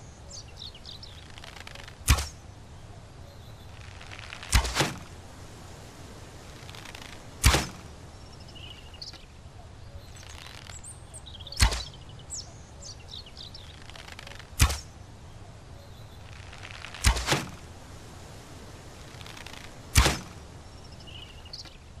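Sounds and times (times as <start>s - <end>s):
birds chirping faintly: 0.0s - 22.0s
arrow shot thwack: 2.0s - 2.4s, 4.4s - 5.1s, 7.4s - 7.9s, 11.6s - 12.0s, 14.6s - 15.0s, 16.9s - 17.6s, 19.9s - 20.4s.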